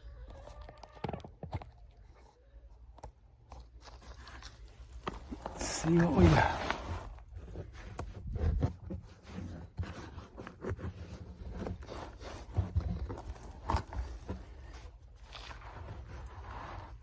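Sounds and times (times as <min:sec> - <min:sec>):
soil and roots scraping and tearing: 0:03.4 - 0:17.0.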